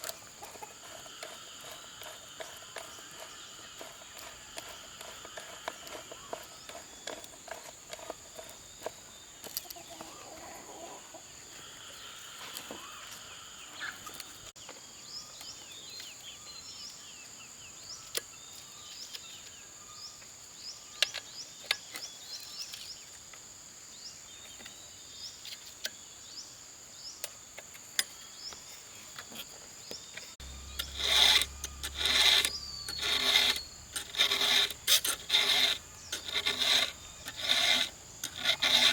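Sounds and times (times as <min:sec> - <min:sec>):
rasping strokes on wood: 0:00.0 - 0:08.9, 0:30.4 - 0:38.9
bird chirps: 0:29.9 - 0:38.2
high-pitched insect tone: 0:30.4 - 0:38.9.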